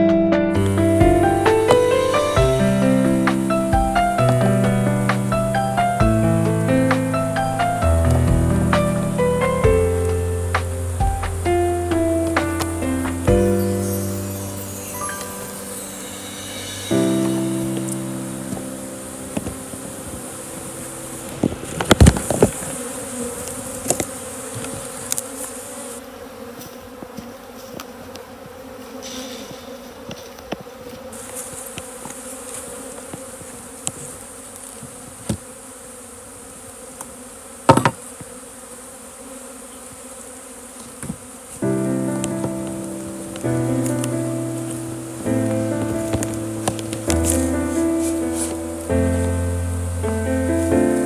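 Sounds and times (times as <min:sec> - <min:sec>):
honeybees buzzing: 0:00.0 - 0:51.0.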